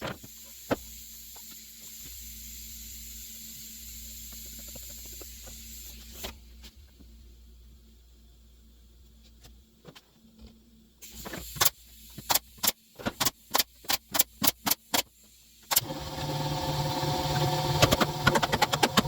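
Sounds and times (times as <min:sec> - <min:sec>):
power drill driving screws: 0:15.7 - 0:19.0.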